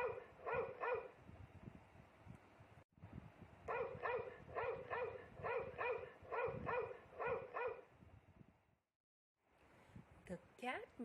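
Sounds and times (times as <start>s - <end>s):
dog barking: 0.0s - 1.2s, 3.7s - 7.9s.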